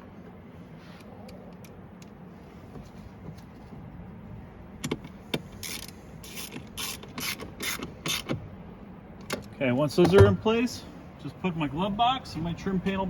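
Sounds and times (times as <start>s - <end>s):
ratchet driving screws: 5.6s - 8.4s.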